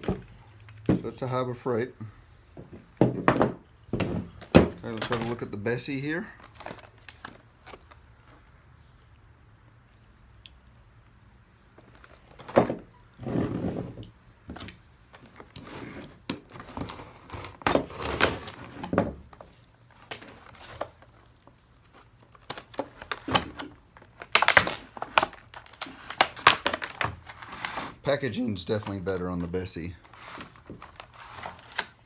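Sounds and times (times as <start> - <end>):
metal clamp knocks and clinks: 0.0 - 1.3, 2.6 - 5.2
packaging rustling: 6.2 - 8.3, 19.9 - 32.0.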